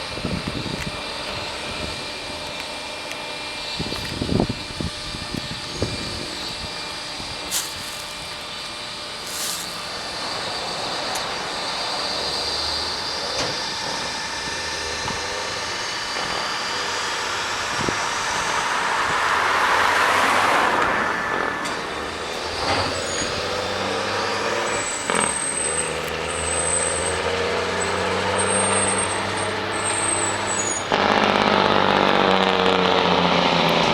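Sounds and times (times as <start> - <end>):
diesel truck engine running: 0.0 - 33.9
loud air hiss: 5.2 - 31.7.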